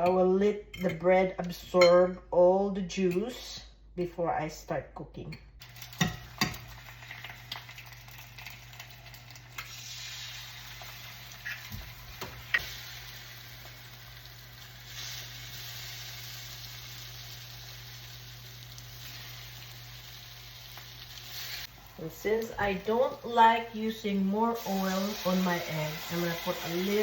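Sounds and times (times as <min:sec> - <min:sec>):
food sizzling in a frying pan: 0:05.6 - 0:27.0.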